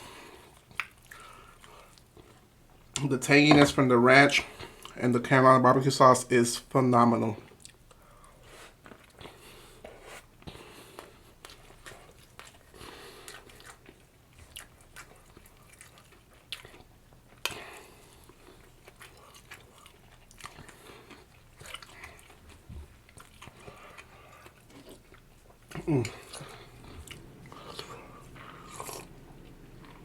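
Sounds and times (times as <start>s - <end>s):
biting and chewing sandwich: 8.7s - 30.0s.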